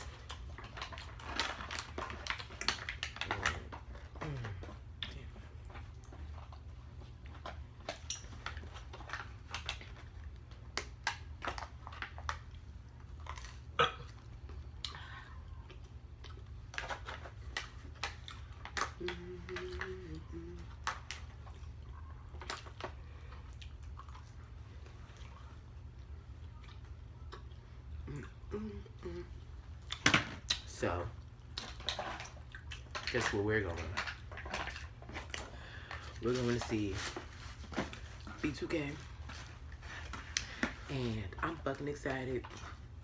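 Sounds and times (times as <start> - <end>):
person chewing: 12.0 - 16.7, 18.0 - 24.5.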